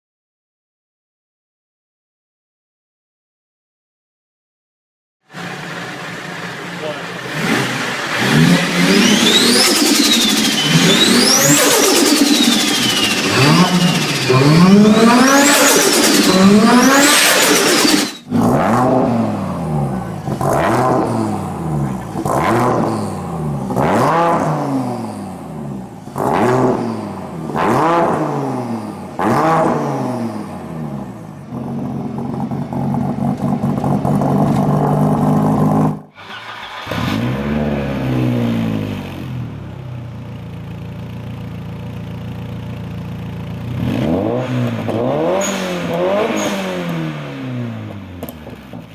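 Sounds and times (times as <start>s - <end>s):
turbocharged car engine revving: 5.3s - 48.9s
high turbo whistle: 5.4s - 18.3s.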